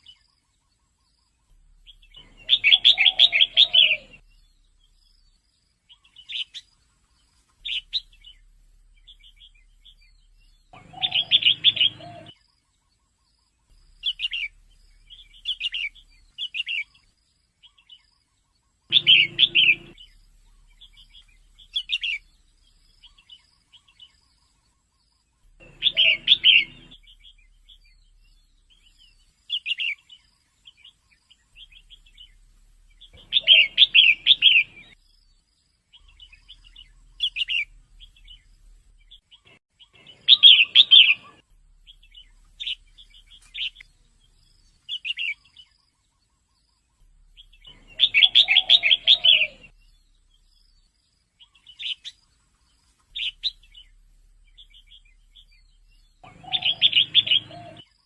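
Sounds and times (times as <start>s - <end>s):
bird chattering calls: 2.1s - 4.2s, 10.7s - 12.3s, 18.9s - 22.3s, 25.6s - 27.5s, 33.0s - 35.0s, 47.4s - 49.8s, 54.6s - 57.8s.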